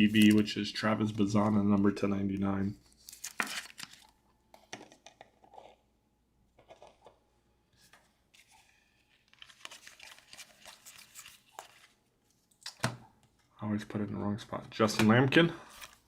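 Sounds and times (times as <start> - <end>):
cards and wrappers rustling: 0.0 - 5.7, 7.8 - 12.8, 14.8 - 16.0.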